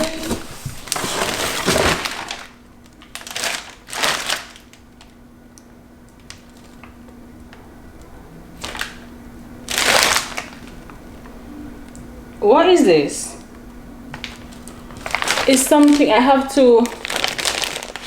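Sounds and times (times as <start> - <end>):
packaging rustling and scraping: 0.0 - 4.7, 14.2 - 18.0
faint steady hum: 0.0 - 18.0.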